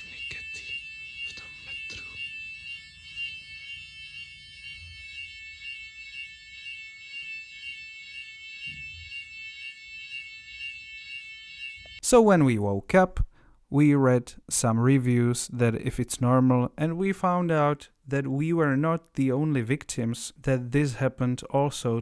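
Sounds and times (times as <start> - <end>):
fire alarm high-pitched tone: 0.0 - 12.0.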